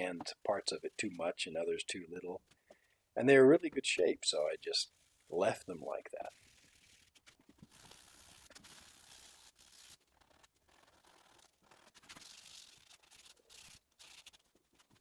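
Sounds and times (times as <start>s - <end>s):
sandpaper rubbing on wood: 7.7s - 10.0s.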